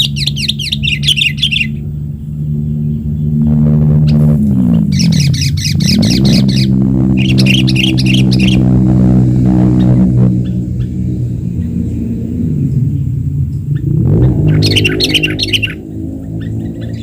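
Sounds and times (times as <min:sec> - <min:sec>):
bird chattering: 0:00.0 - 0:02.0, 0:04.0 - 0:08.8, 0:13.7 - 0:17.0
low droning hum: 0:00.0 - 0:17.0.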